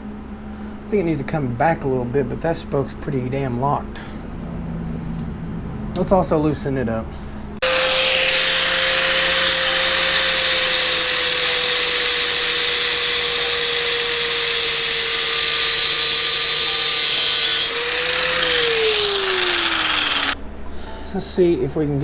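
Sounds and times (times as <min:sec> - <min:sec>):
electric power tool running: 0:07.6 - 0:20.4.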